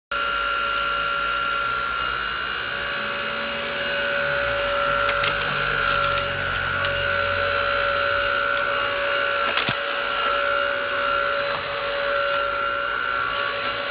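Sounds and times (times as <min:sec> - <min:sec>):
stick vacuum motor whine: 0:00.1 - 0:13.9
sharp clicks: 0:04.5 - 0:13.9.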